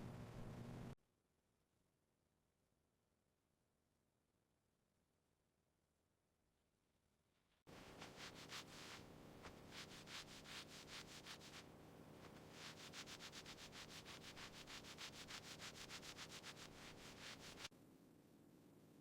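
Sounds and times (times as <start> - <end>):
hand sanding strokes: 7.8 - 11.7, 12.3 - 17.7.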